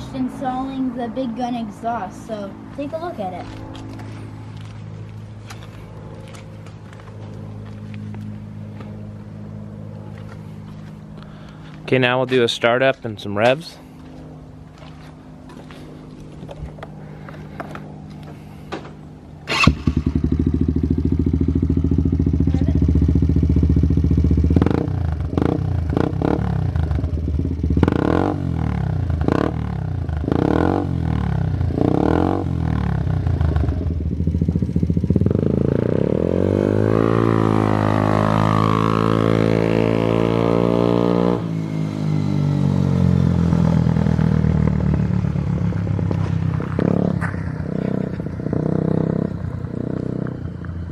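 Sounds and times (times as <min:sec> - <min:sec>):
quad engine starting and idling: 0:16.8 - 0:25.9
engine revving: 0:19.4 - 0:50.9.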